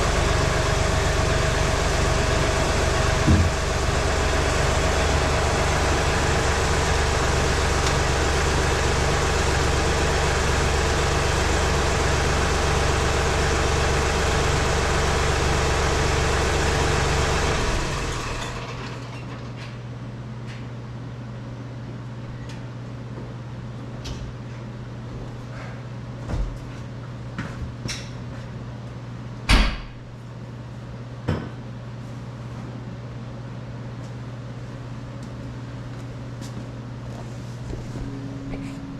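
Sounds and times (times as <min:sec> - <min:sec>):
tractor diesel engine running: 0:00.0 - 0:19.4, 0:37.7 - 0:38.9
low steady hum: 0:37.4 - 0:38.9.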